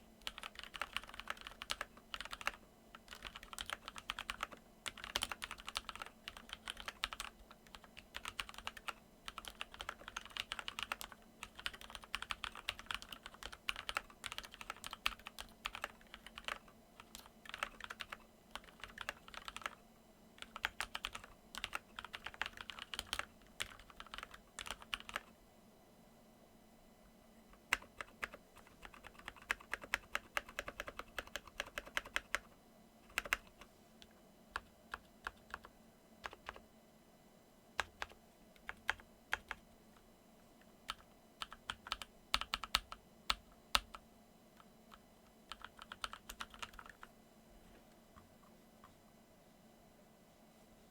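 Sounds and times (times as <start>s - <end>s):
faint static hum: 0.0s - 50.9s
mechanical keyboard typing: 0.2s - 19.8s, 20.4s - 25.3s, 27.6s - 32.5s, 33.1s - 33.7s, 34.6s - 36.6s, 37.8s - 39.6s, 40.9s - 44.0s, 44.9s - 47.1s.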